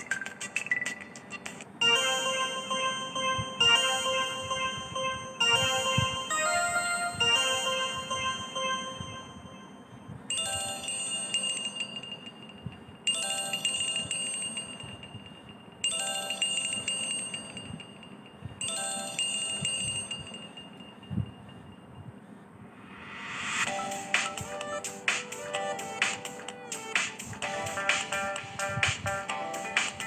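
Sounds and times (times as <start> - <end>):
chime-like phone ringtone: 1.8 - 22.1, 23.5 - 30.0.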